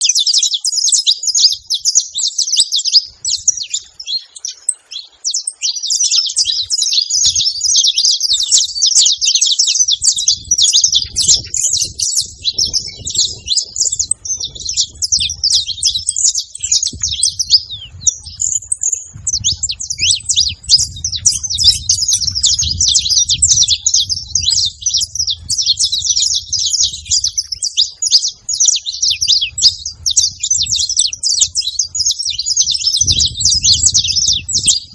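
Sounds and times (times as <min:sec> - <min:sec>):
finch singing high chirps: 0:00.0 - 0:34.9
soft low rumble: 0:16.8 - 0:27.5.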